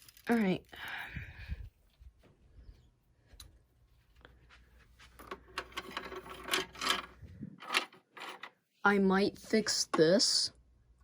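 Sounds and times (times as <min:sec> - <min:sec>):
small objects clicking and rustling: 0:00.0 - 0:01.0.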